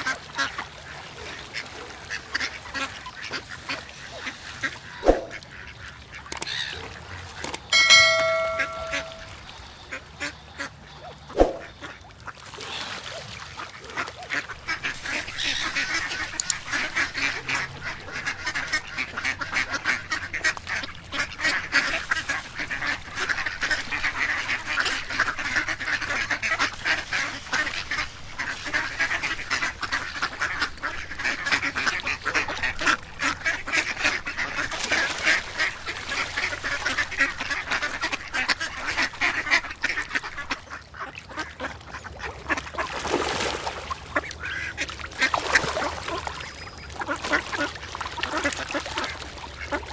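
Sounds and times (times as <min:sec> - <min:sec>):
sharp click: 0:06.3 - 0:06.5
ducks quacking: 0:13.6 - 0:43.0, 0:44.0 - 0:49.9.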